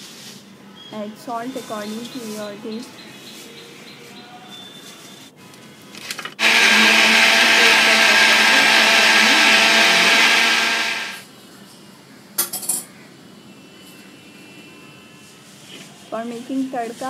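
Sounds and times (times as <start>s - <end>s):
electric mixer grinder running: 6.4s - 11.2s.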